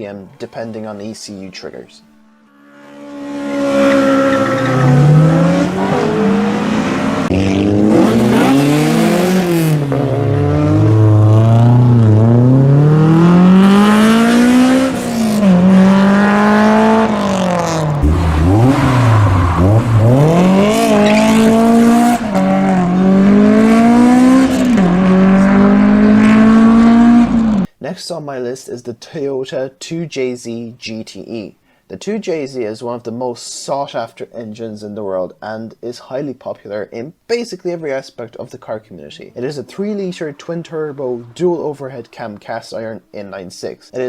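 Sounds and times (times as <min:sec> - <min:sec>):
car engine revving hard: 0:02.6 - 0:27.7.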